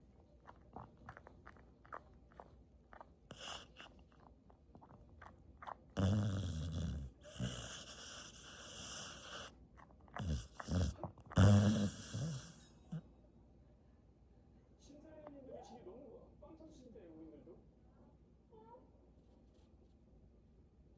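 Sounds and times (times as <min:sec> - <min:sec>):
dog breathing noisily: 0:03.3 - 0:04.0, 0:06.0 - 0:09.5, 0:10.2 - 0:13.0
dog snoring: 0:03.3 - 0:04.0, 0:05.6 - 0:13.0.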